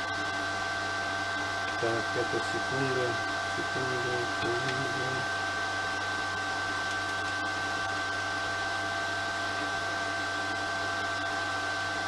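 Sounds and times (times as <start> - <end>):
cooling fan whirring: 0.0 - 12.0
welder high whine and hum: 0.0 - 12.0.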